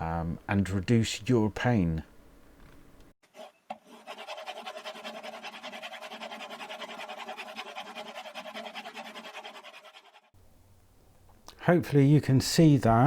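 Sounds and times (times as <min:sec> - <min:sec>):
chisel grinding on sharpening stone: 0:03.4 - 0:10.3.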